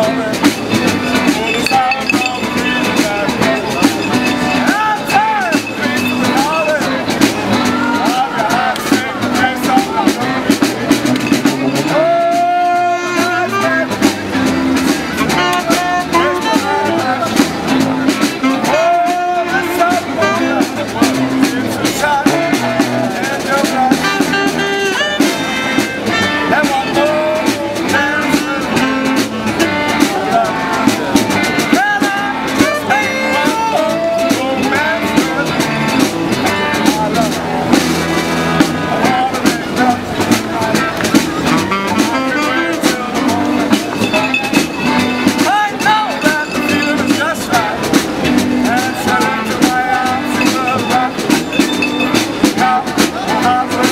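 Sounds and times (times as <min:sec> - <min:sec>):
drum beat: 0:00.0 - 0:15.3, 0:34.4 - 0:53.9
street band playing upbeat tune: 0:00.0 - 0:53.9.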